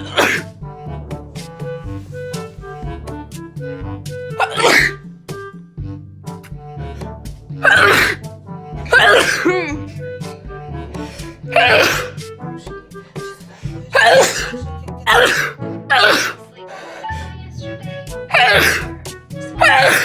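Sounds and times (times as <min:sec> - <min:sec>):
person sneezing: 0:00.0 - 0:00.4, 0:04.4 - 0:05.0, 0:07.6 - 0:08.2, 0:08.9 - 0:10.0, 0:11.5 - 0:12.2, 0:13.9 - 0:16.4, 0:18.3 - 0:18.9, 0:19.6 - 0:20.0
background music: 0:00.0 - 0:20.0.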